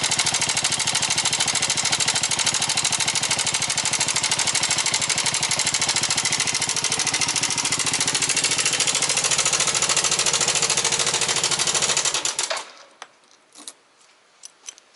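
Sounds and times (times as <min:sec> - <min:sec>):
scooter engine idling with rattle: 0:00.0 - 0:13.0.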